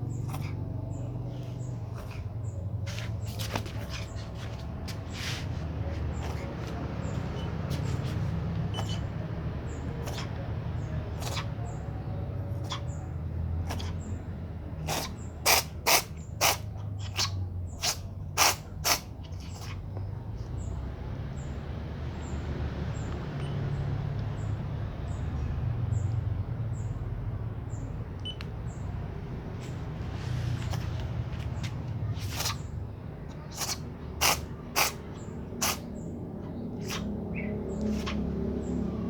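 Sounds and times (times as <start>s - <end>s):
cat sneezing and coughing: 0.2s - 0.6s, 7.4s - 9.2s, 10.0s - 10.4s, 11.1s - 11.5s, 13.6s - 14.0s, 14.8s - 19.8s, 32.2s - 32.8s, 33.4s - 35.9s, 36.8s - 37.1s.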